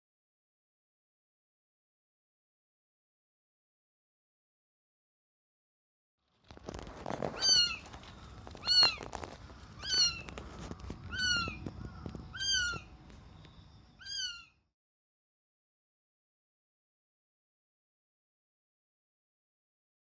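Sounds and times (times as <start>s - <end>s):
faint rustling: 6.3s - 13.6s
kitten meowing: 7.3s - 12.9s, 14.0s - 14.6s.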